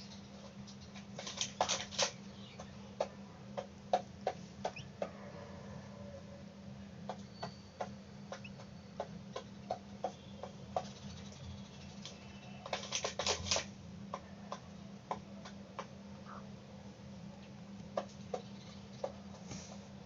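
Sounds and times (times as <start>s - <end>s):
hen pecking at grains: 0.0s - 5.2s, 7.1s - 16.4s.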